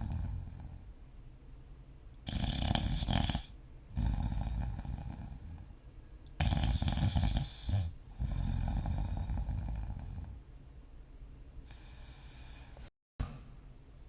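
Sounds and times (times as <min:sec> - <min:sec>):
person snoring: 0:00.0 - 0:00.9, 0:02.2 - 0:05.7, 0:06.4 - 0:10.4.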